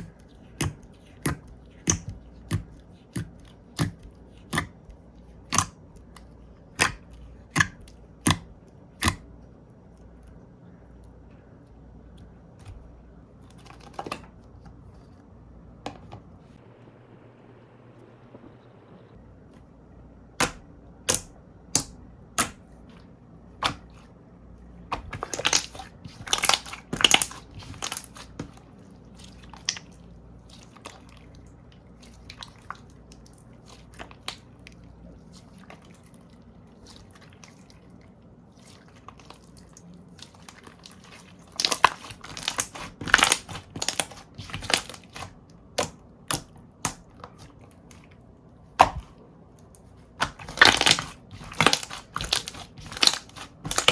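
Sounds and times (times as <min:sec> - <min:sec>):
slime crunchy clicks and pops: 0:25.0 - 0:28.5, 0:41.5 - 0:47.4, 0:50.2 - 0:53.9.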